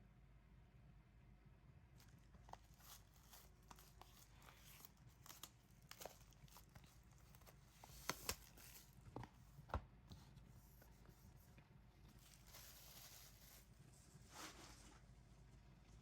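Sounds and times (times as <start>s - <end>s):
packaging rustling: 2.0s - 9.7s.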